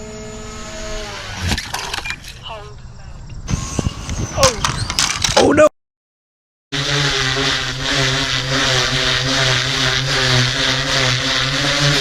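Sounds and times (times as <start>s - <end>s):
model helicopter flying: 0.0s - 2.0s, 3.5s - 5.4s, 6.8s - 12.0s.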